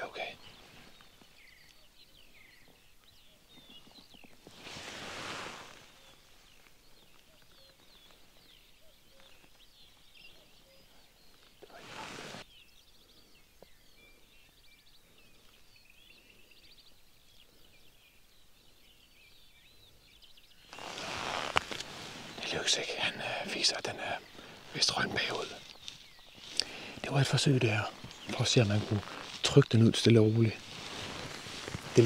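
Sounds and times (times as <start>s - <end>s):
small birds chirping: 0.0s - 32.0s
rushes of hiss: 4.5s - 6.1s, 11.7s - 12.4s.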